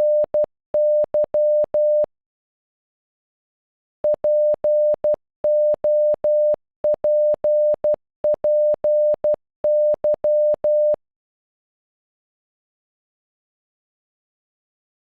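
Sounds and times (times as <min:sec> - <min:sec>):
morse code beeps: 0:00.0 - 0:02.1, 0:04.1 - 0:11.0.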